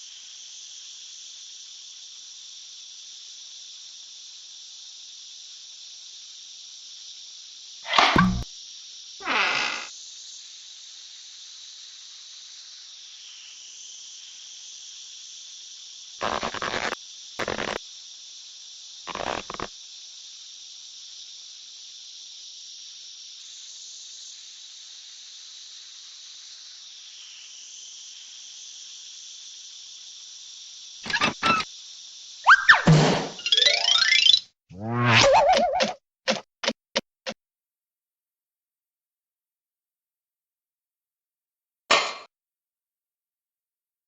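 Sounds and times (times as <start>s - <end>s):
crickets chirping: 0.0s - 7.9s, 8.5s - 32.9s.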